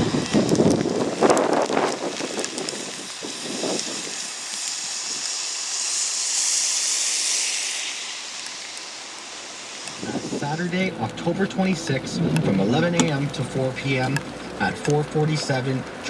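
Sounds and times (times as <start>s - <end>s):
wind buffeting microphone: 0.0s - 5.3s, 9.9s - 11.2s
hard rain hissing: 0.0s - 16.0s.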